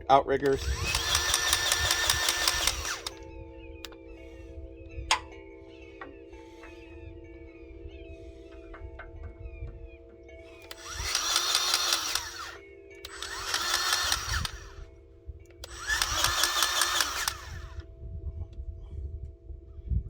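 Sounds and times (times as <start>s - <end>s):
electric grease gun running: 0.4s - 3.2s, 10.6s - 14.9s, 15.6s - 17.8s
steady low hum: 10.4s - 19.8s.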